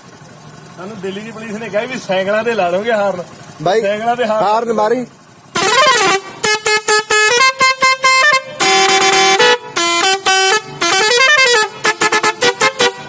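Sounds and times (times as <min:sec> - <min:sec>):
bicycle musical horn beeping: 0:05.4 - 0:13.0.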